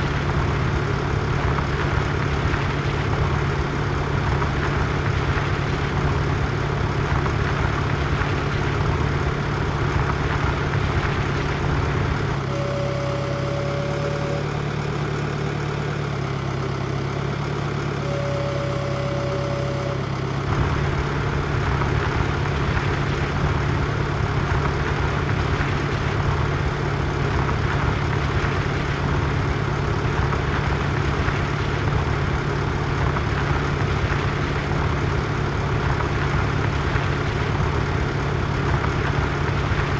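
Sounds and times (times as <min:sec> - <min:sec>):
tractor engine running: 0:00.0 - 0:39.9
held steady tones: 0:10.2 - 0:16.1, 0:17.6 - 0:24.2.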